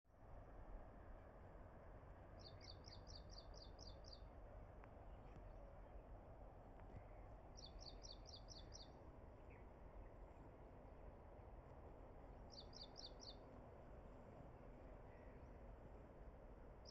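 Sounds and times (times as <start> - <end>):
faint outdoor background hiss: 0.1 - 16.9.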